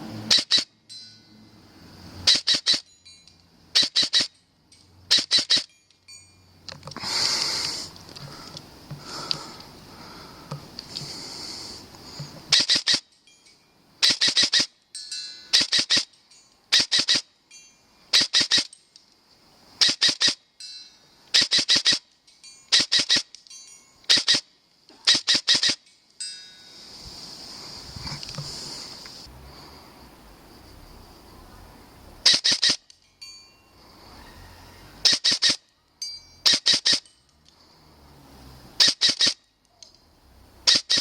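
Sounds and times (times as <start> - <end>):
airsoft gun shots: 15.5 - 16.1, 35.0 - 35.6.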